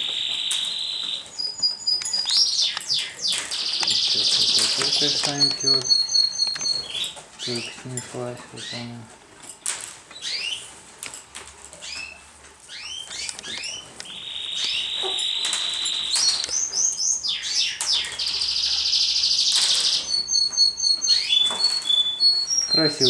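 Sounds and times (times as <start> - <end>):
bird trills: 0.0 - 7.8, 10.2 - 10.7, 11.8 - 23.0
birds chirping: 0.0 - 10.8, 11.7 - 23.0.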